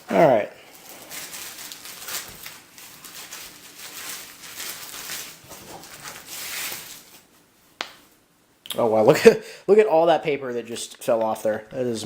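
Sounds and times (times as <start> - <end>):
old newspaper rustling and crinkling: 0.6 - 7.5.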